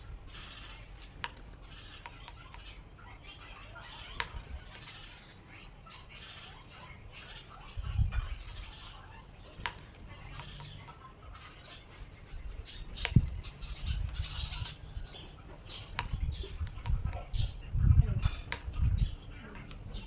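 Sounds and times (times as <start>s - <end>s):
bird wings fluttering: 0.2s - 2.1s, 4.0s - 4.9s, 7.8s - 10.8s, 11.7s - 20.0s
bird tapping on mirror: 4.0s - 4.8s, 9.4s - 11.0s, 12.8s - 17.5s, 18.2s - 20.0s.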